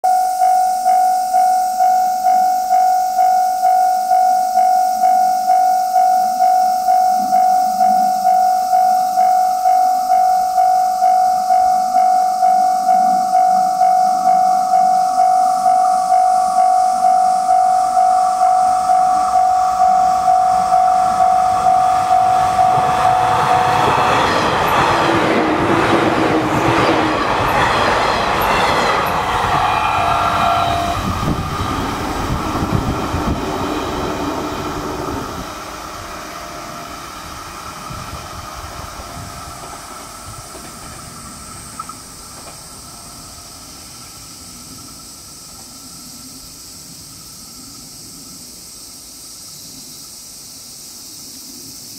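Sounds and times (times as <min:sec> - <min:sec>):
level crossing bell ringing: 0:00.0 - 0:24.3
train passing: 0:00.1 - 0:51.9.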